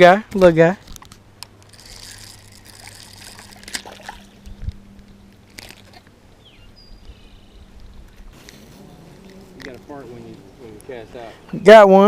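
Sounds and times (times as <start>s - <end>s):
low steady hum: 0.0s - 12.0s
water sloshing: 1.6s - 6.2s.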